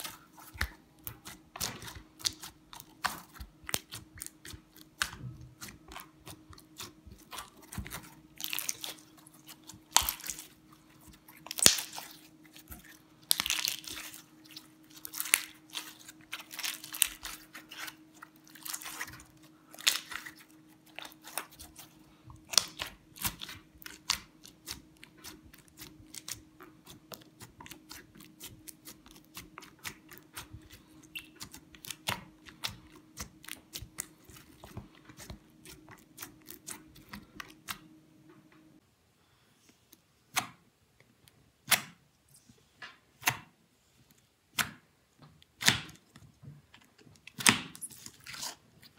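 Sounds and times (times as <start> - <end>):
faint steady hum: 0.0 - 48.9
slime crackling and clicking: 11.5 - 12.2.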